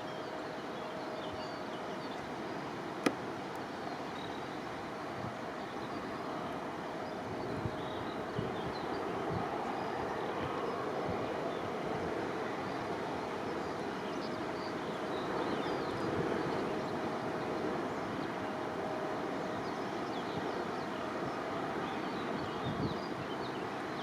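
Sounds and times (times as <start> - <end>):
distant airliner engine rumble: 0.0 - 24.0.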